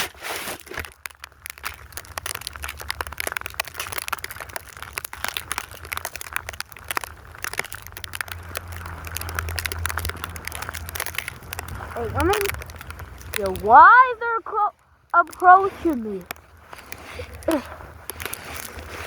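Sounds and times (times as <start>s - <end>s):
snow crunching: 7.2s - 19.0s.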